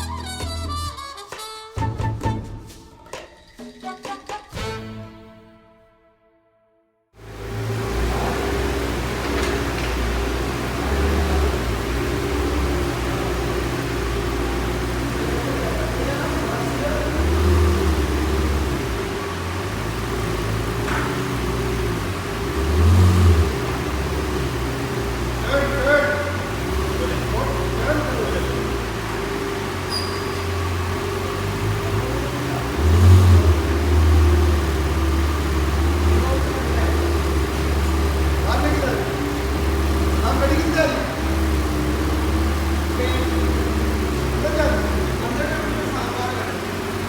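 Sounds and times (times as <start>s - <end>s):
car engine idling: 7.2s - 47.0s.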